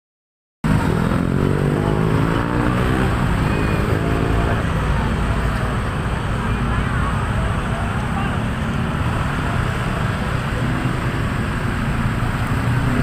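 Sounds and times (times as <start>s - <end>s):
bus diesel engine drone: 0.6s - 13.0s
rumbling road noise: 0.6s - 13.0s.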